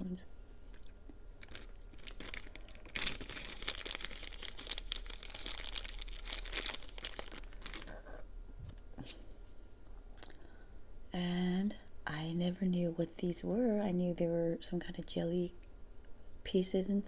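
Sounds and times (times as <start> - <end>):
plastic packaging crinkling: 0.7 - 8.2.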